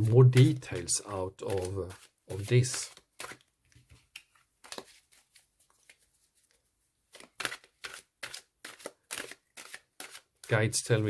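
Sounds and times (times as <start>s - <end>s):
cards slapping on a table: 7.1s - 10.3s.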